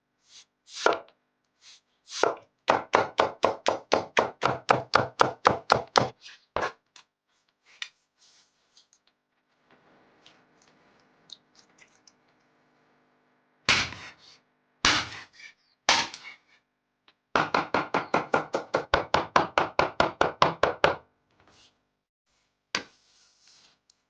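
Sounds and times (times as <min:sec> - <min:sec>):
knife chopping on cutting board: 0:02.2 - 0:06.8, 0:13.7 - 0:14.2, 0:14.9 - 0:15.3, 0:15.9 - 0:16.4, 0:17.4 - 0:21.0.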